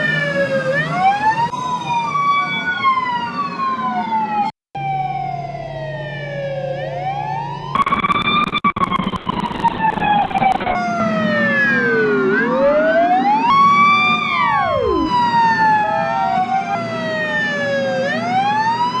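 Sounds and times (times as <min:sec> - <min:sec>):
ambulance siren wailing: 0:00.0 - 0:08.4, 0:09.7 - 0:19.0
second siren: 0:00.0 - 0:19.0
low vehicle drone: 0:10.8 - 0:19.0.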